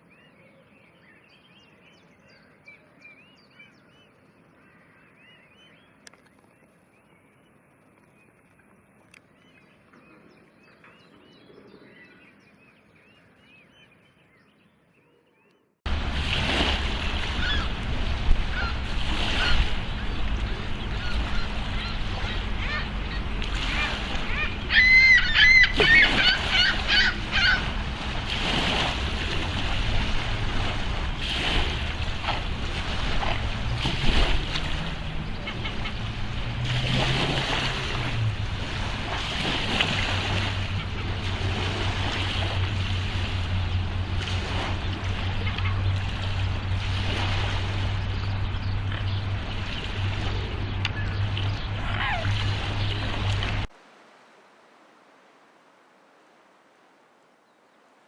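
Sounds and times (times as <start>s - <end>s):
swans honking: 15.9s - 39.2s, 40.1s - 53.7s
steady rushing noise: 15.9s - 57.4s.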